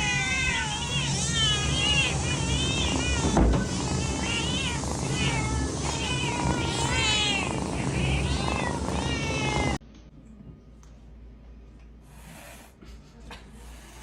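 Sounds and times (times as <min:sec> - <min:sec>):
cat meowing: 0:00.0 - 0:09.8.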